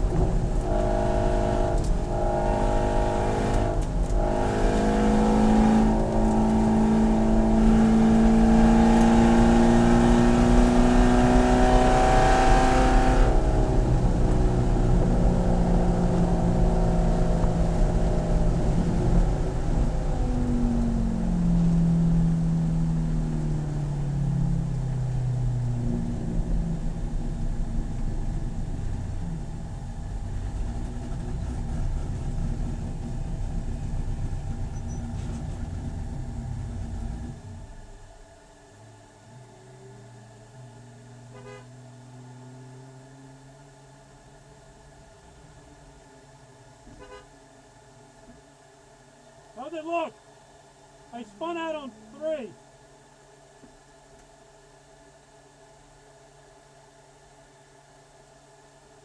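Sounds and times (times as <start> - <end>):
race car engine accelerating: 0.0 - 38.0.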